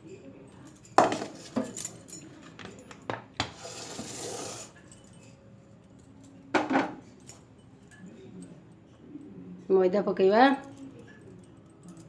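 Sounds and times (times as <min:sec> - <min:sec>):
utensils clinking against bowl: 0:00.6 - 0:08.6.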